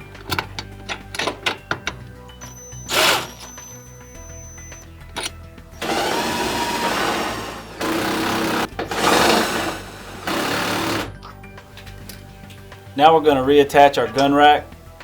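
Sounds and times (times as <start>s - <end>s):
cordless drill running: 2.4s - 11.1s.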